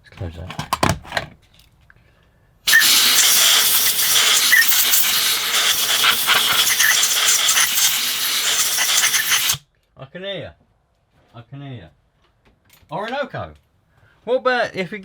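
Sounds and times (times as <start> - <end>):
compressed air jet hissing: 2.7 - 9.6.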